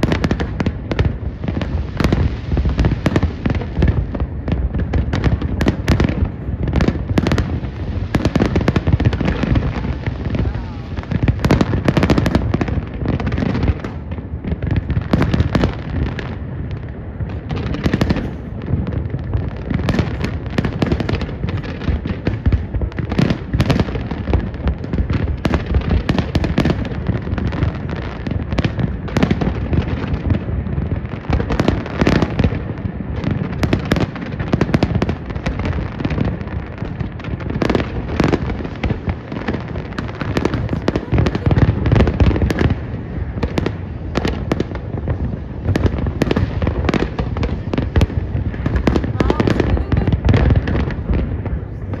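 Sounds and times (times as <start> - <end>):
fireworks bangs and crackling: 0.0 - 52.0.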